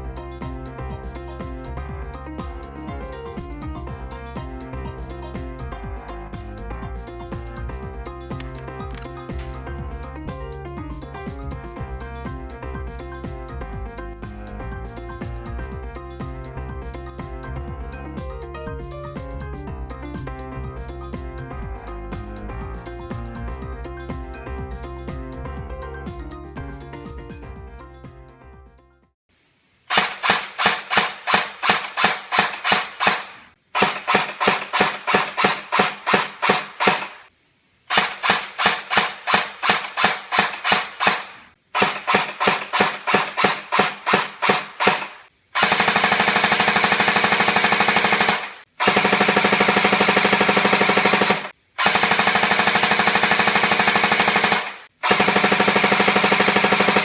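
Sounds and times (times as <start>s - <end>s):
airsoft gun firing: 29.9s - 37.2s, 37.9s - 57.0s.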